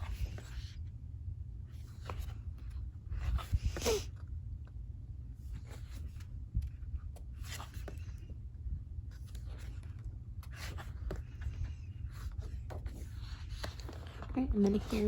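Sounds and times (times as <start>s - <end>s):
steady low hum: 0.0s - 15.0s
paper pages rustling: 9.1s - 15.0s.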